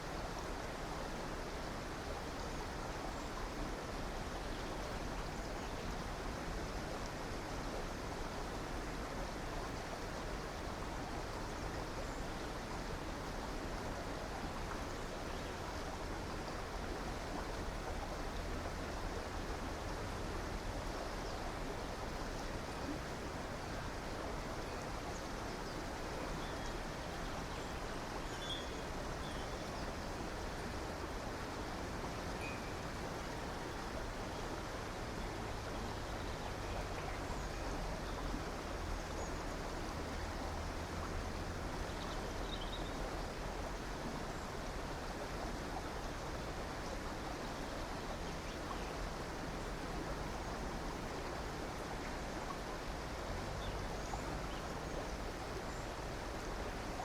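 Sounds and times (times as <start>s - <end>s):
river water rushing: 0.0s - 57.0s
faint bird chirps: 32.4s - 32.8s.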